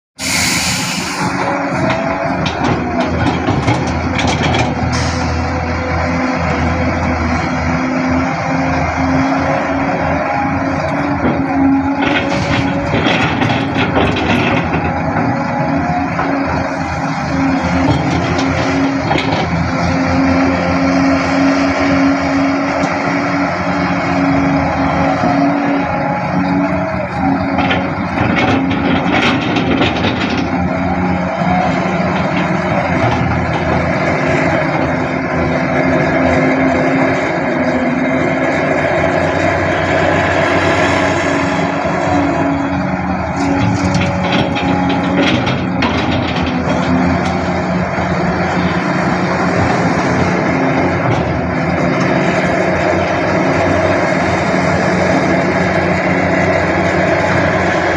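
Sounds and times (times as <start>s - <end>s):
excavator diesel engine droning: 0.2s - 57.9s
rattles and clatter: 1.3s - 6.8s, 10.7s - 21.0s, 26.4s - 37.7s, 41.7s - 57.9s.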